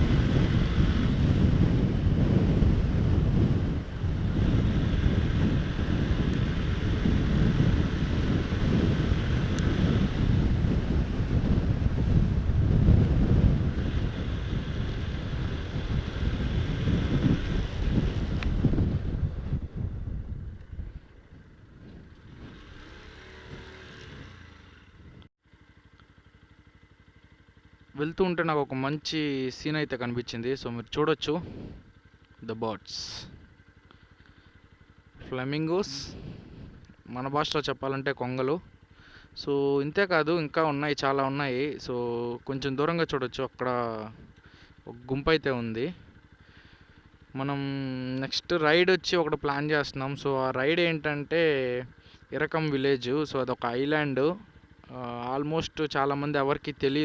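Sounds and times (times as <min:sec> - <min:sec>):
wind buffeting microphone: 0:00.0 - 0:25.3, 0:31.4 - 0:32.0, 0:34.9 - 0:37.1
road noise: 0:00.0 - 0:57.0
vehicle rumble: 0:00.0 - 0:57.0
motorcycle engine puttering: 0:20.3 - 0:28.3.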